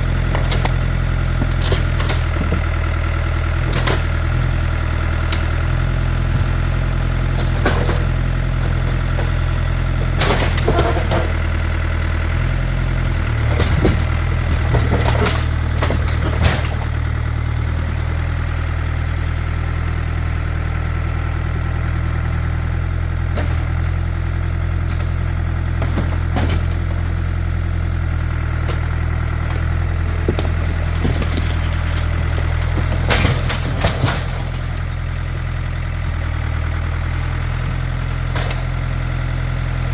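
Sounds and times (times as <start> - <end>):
sharp knocks and crunches: 0.0 - 17.9, 23.2 - 35.6, 37.7 - 38.9
tractor engine running: 0.0 - 39.9.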